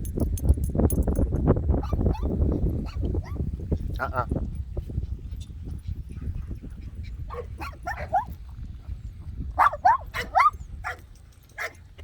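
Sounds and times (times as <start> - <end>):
dog barking: 7.3 - 8.3, 9.6 - 11.0, 11.6 - 11.8.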